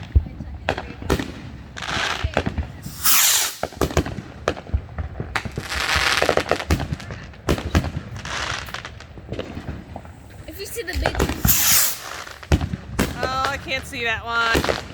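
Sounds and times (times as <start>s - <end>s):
fireworks bangs and crackles: 0.0s - 14.9s
fireworks hissing bursts: 1.2s - 4.4s, 9.6s - 14.9s.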